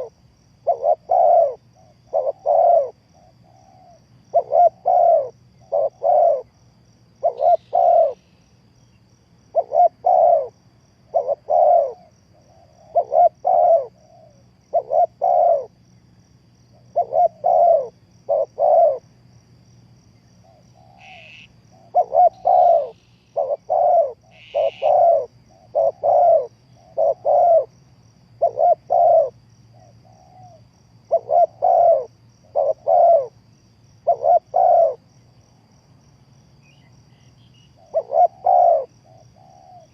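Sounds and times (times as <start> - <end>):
dove cooing: 0.0 - 6.5, 7.2 - 8.2, 9.5 - 15.8, 16.7 - 19.1, 20.4 - 27.8, 28.4 - 33.4, 34.0 - 35.0, 37.8 - 39.9.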